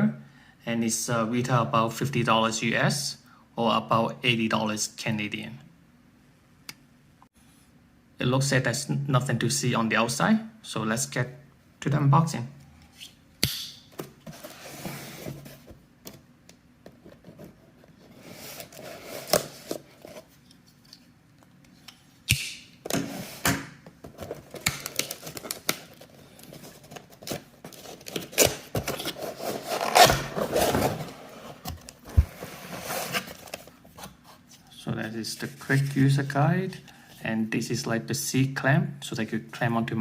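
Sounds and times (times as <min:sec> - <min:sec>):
packaging rustling and scraping: 0:14.2 - 0:15.8, 0:17.0 - 0:21.1, 0:23.0 - 0:36.3.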